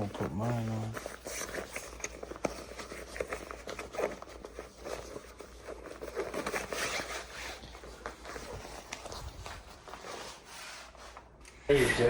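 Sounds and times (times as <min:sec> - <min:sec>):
fabric scrapes: 0:06.7 - 0:12.0.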